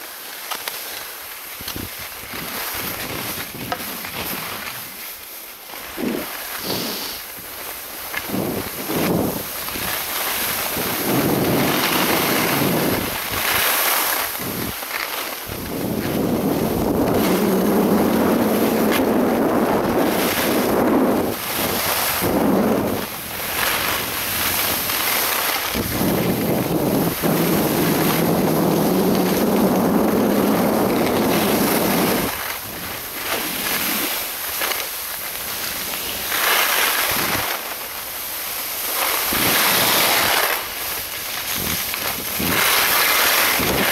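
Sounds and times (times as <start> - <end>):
wind buffeting on microphone: 1.6 - 5.0, 5.9 - 13.6, 14.2 - 14.8, 15.4 - 34.2, 37.0 - 37.5, 39.2 - 43.9.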